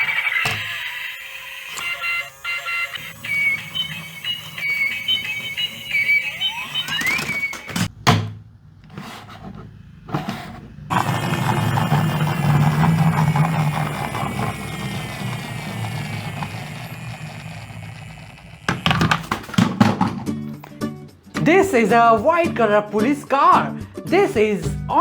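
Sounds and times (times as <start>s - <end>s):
toy wheels rolling whir: 0.0s - 7.9s, 10.2s - 19.6s
toy clicks and knocks: 1.8s - 7.9s, 10.9s - 19.6s.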